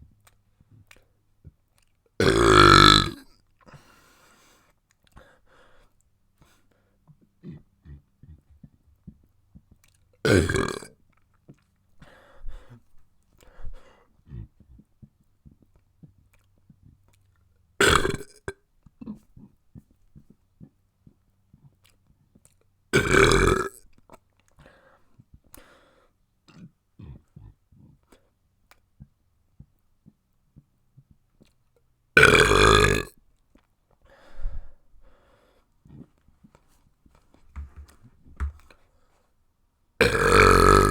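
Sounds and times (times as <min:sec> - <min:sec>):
person burping loudly: 0:02.2 - 0:03.2, 0:10.2 - 0:10.9, 0:17.8 - 0:18.6, 0:23.0 - 0:23.8, 0:32.2 - 0:33.2, 0:40.0 - 0:40.9
soft breathy sounds: 0:03.6 - 0:10.0, 0:11.5 - 0:17.3, 0:24.5 - 0:31.6, 0:33.9 - 0:39.5.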